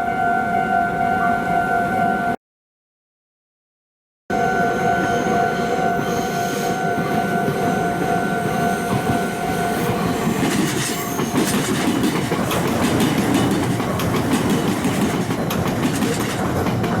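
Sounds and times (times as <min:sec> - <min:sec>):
electric train rumbling past: 0:04.3 - 0:17.0
wheels clattering over rail joints: 0:07.5 - 0:17.0.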